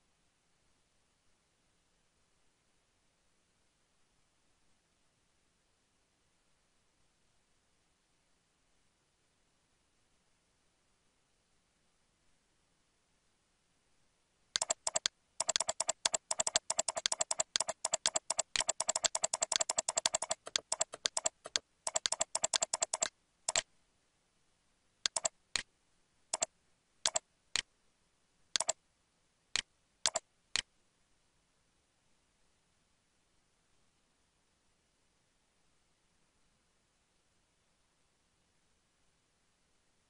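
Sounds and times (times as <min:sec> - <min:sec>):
computer mouse clicking: 0:14.6 - 0:23.7, 0:25.1 - 0:25.7, 0:27.1 - 0:27.7, 0:28.6 - 0:28.8, 0:29.6 - 0:30.7.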